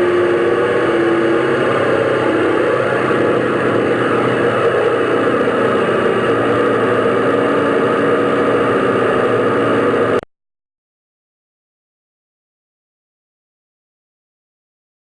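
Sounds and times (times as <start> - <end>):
airplane engine drone: 0.0 - 10.3.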